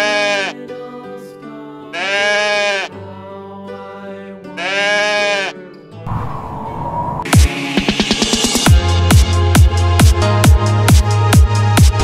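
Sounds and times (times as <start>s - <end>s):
goat bleating: 0.0s - 0.6s, 1.9s - 2.9s, 4.6s - 5.6s
background music: 0.0s - 12.0s
rushing noise: 6.1s - 8.6s.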